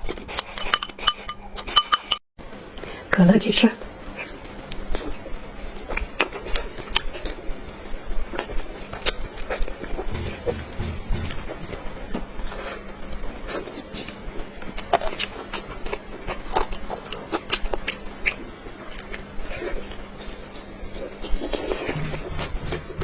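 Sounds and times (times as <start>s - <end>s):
person chewing and biting: 14.7s - 22.2s.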